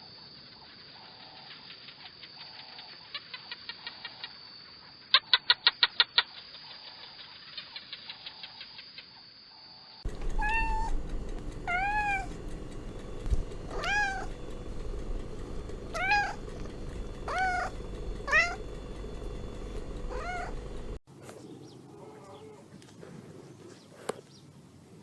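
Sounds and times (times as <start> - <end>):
low background hum: 10.0 - 22.6
cat meowing: 10.1 - 18.6, 19.7 - 20.7.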